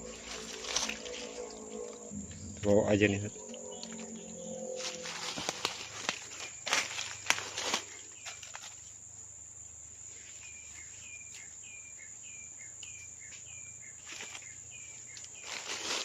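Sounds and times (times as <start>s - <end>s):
small animal calling: 0.0s - 6.4s
rustling footsteps: 0.0s - 8.9s, 14.1s - 16.0s
high insect drone: 0.0s - 16.0s.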